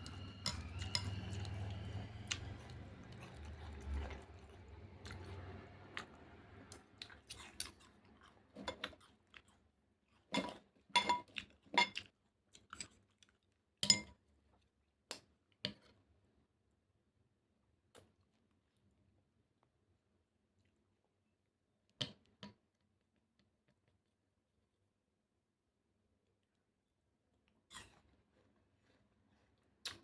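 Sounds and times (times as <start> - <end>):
utensil clinking on a dish: 0.0 - 2.0, 10.4 - 12.0
person chewing: 0.0 - 10.6.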